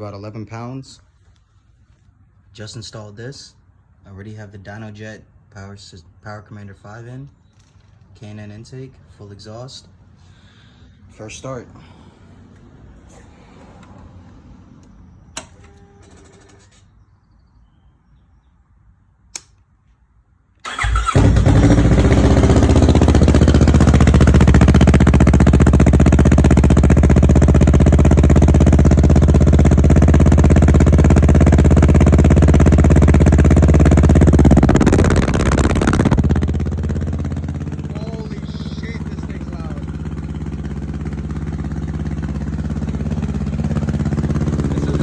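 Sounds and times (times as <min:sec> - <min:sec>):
motorcycle engine idling: 0:20.7 - 0:45.0.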